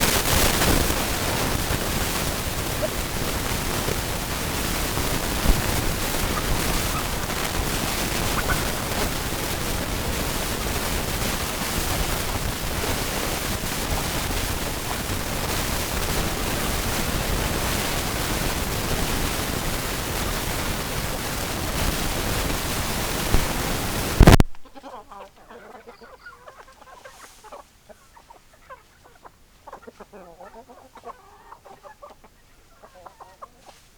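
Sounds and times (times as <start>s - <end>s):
loud even rushing noise: 0.0s - 10.6s
chickens clucking: 0.4s - 33.9s.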